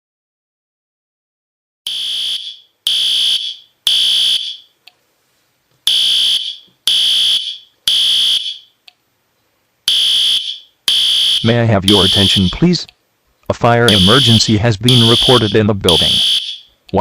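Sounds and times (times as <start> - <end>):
fire alarm horn blasts: 1.9 - 4.7, 5.9 - 8.7, 9.9 - 12.7, 13.9 - 16.7.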